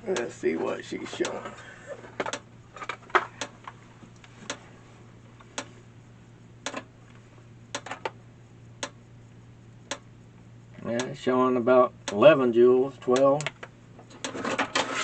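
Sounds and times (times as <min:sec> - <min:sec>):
electric fence charger ticking: 0:00.0 - 0:01.5, 0:02.2 - 0:04.6, 0:05.4 - 0:05.8, 0:06.6 - 0:14.4
low steady hum: 0:00.0 - 0:15.0
clicks: 0:01.2 - 0:01.4.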